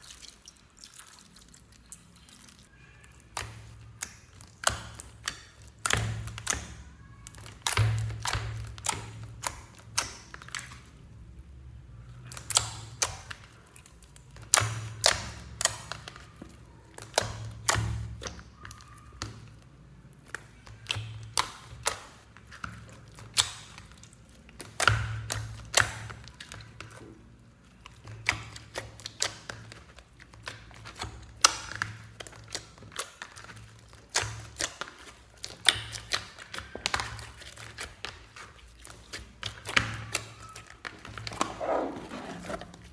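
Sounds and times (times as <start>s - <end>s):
slime squished by hand: 0.0s - 42.9s.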